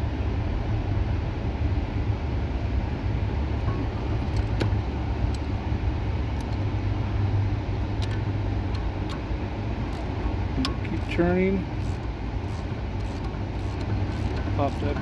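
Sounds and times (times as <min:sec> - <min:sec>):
low hum: 0:00.0 - 0:15.0
metallic clicks: 0:03.6 - 0:05.6, 0:06.3 - 0:06.7, 0:07.8 - 0:15.0.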